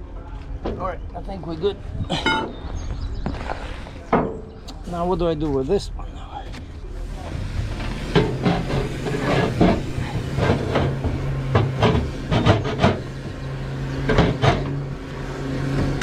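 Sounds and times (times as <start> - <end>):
low engine hum: 0.0 - 16.0
metal chains clanking: 2.1 - 2.6.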